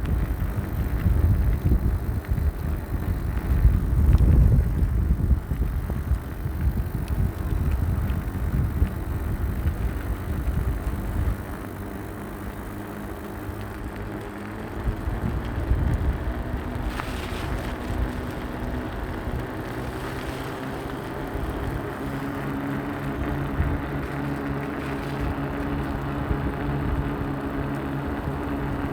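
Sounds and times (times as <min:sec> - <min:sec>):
wind on microphone: 0:00.0 - 0:11.6
low motor hum: 0:00.0 - 0:28.9
vehicle rumbling: 0:00.0 - 0:28.9.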